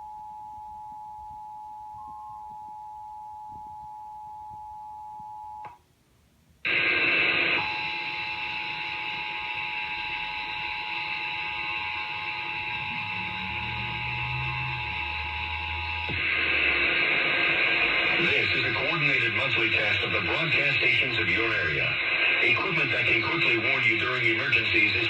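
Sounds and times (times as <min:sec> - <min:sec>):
static hiss: 0:06.6 - 0:25.0.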